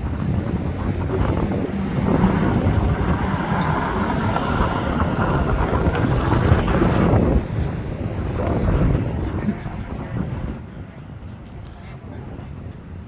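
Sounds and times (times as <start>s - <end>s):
motor vehicle passing: 0.1s - 7.5s.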